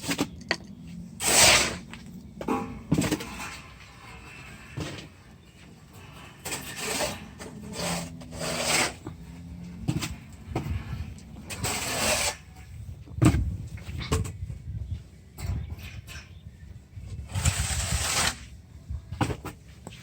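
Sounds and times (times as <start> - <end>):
steel tubing scraping: 0.0 - 12.8, 17.2 - 18.6.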